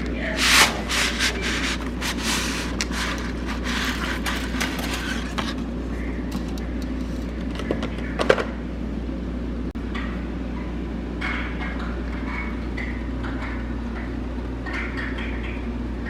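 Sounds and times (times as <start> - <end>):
low steady hum: 0.0 - 16.0
hissy scraping strokes: 0.2 - 5.3.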